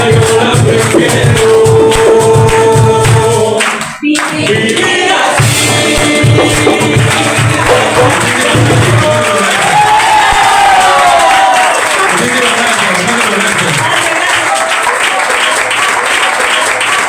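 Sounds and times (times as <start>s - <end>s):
people singing: 0.0s - 9.8s
percussion beat: 0.0s - 17.0s.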